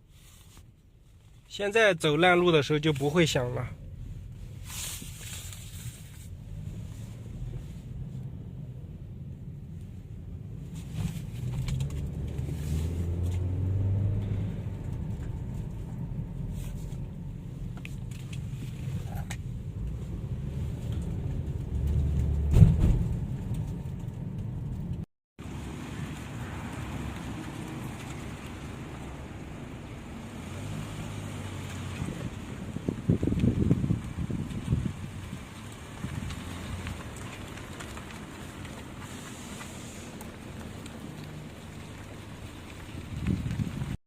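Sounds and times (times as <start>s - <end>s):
road and tyre rumble: 0.0s - 44.0s
loud thump: 22.4s - 23.4s.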